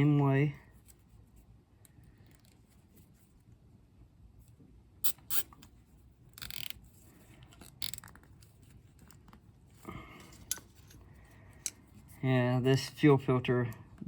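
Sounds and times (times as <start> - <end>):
zip tie clicking and ratcheting: 5.0 - 5.7, 6.3 - 6.8, 7.5 - 8.5.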